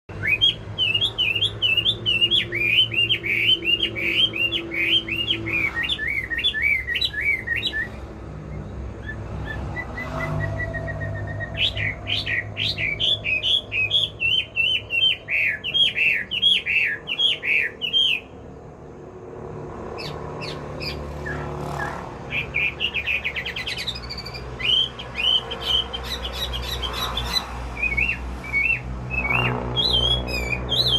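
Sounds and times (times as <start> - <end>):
songbird chattering chirps: 0.1 - 18.4, 20.0 - 30.9.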